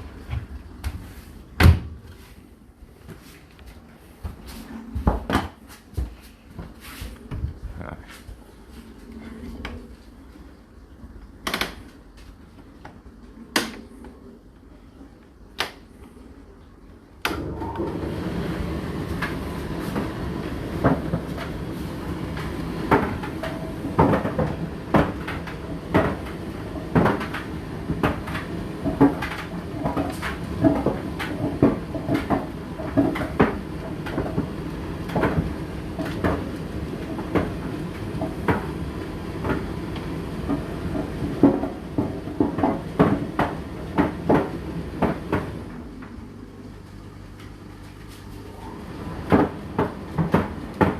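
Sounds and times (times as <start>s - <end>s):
clothes dryer running: 0.0s - 50.9s
laundry knocking in drum: 22.4s - 36.5s, 40.4s - 45.6s.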